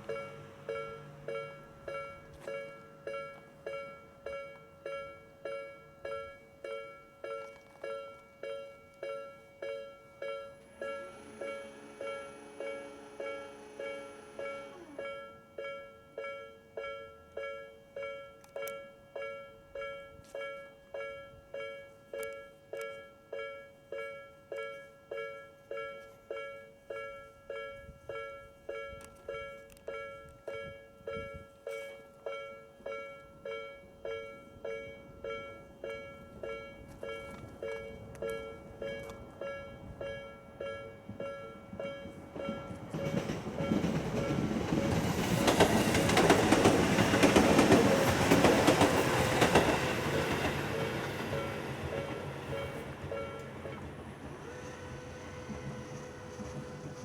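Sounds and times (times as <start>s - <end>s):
level crossing warning bell: 0.0s - 57.0s
train rumble: 34.1s - 57.0s.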